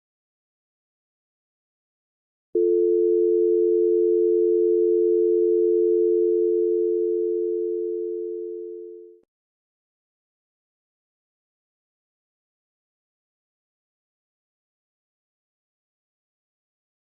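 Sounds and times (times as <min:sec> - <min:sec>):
telephone dial tone: 0:02.6 - 0:09.2.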